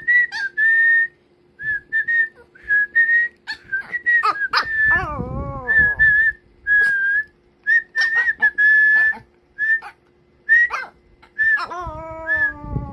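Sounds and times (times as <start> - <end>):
dog whining: 3.4 - 7.1, 7.8 - 12.9.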